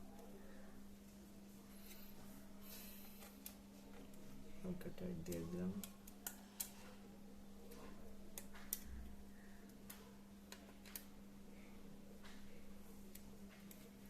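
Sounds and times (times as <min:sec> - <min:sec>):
light clicks and taps of tools: 0:05.2 - 0:07.0, 0:12.2 - 0:14.0.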